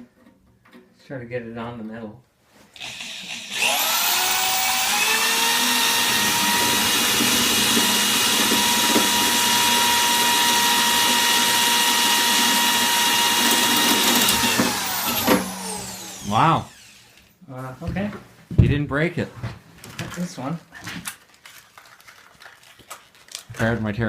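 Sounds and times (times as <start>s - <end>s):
electric drill whining: 2.8s - 17.4s.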